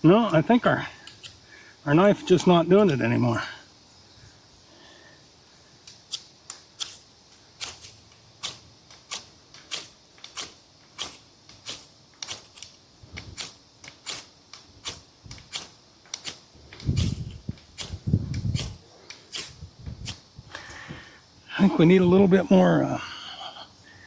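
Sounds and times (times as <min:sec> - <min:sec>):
knife scraping ferro rod: 0:06.1 - 0:07.0, 0:07.6 - 0:12.7, 0:13.4 - 0:20.2.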